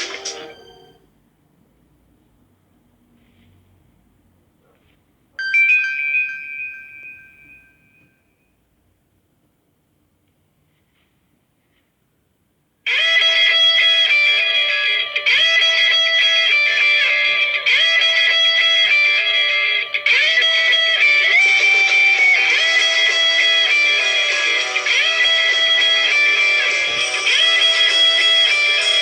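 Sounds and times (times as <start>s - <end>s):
guitar-like phone ringtone: 0.0s - 1.0s, 5.4s - 8.1s, 12.9s - 29.0s.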